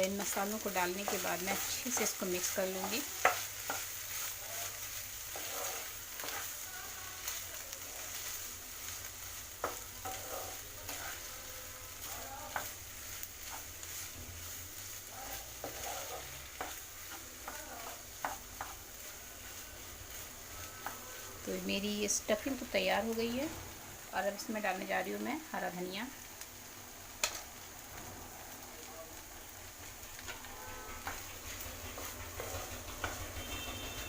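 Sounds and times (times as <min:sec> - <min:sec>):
faint sizzle: 0:00.0 - 0:34.0
spatula scraping a pan: 0:00.1 - 0:21.4, 0:30.1 - 0:34.0.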